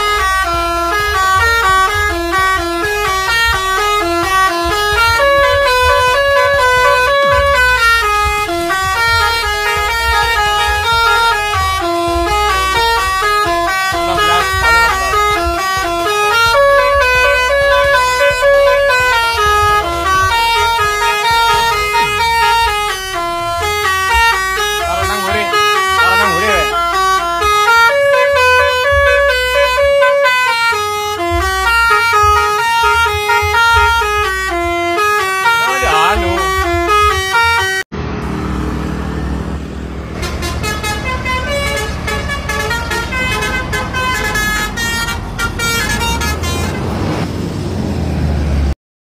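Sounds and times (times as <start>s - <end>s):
multi-tone air horn melody: 0.0s - 37.8s, 40.1s - 46.9s.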